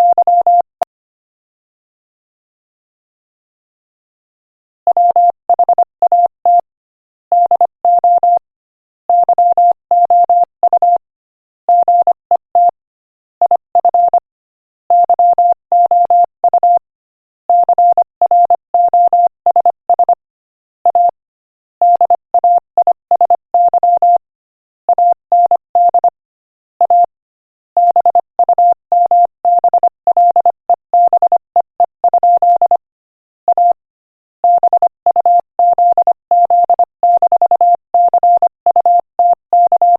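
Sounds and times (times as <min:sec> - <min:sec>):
morse code beeps: 0:00.0 - 0:00.7, 0:04.9 - 0:06.7, 0:07.3 - 0:08.4, 0:09.1 - 0:11.0, 0:11.7 - 0:12.8, 0:13.5 - 0:14.2, 0:14.9 - 0:16.8, 0:17.5 - 0:20.2, 0:20.8 - 0:21.2, 0:21.8 - 0:24.2, 0:24.9 - 0:26.2, 0:26.8 - 0:27.1, 0:27.8 - 0:32.8, 0:33.5 - 0:33.8, 0:34.4 - 0:39.9.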